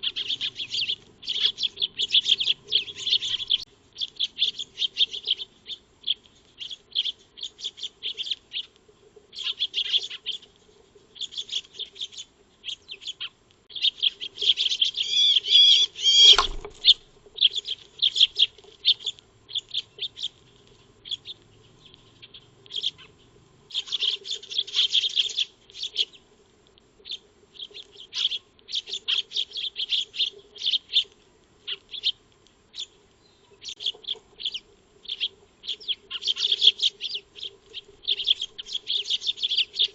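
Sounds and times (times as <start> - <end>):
sparrows chirping: 0.0 - 26.3, 27.0 - 39.9
thump: 16.3 - 16.9.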